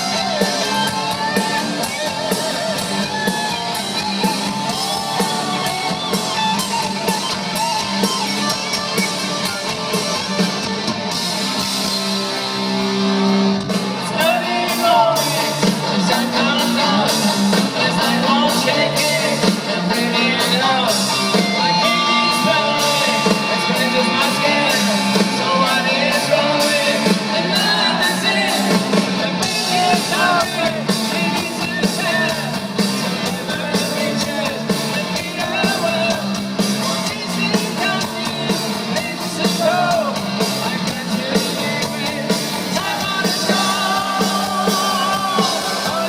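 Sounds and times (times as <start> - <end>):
rock band playing: 0.0 - 46.0
lead singer yelling vocals: 14.0 - 46.0.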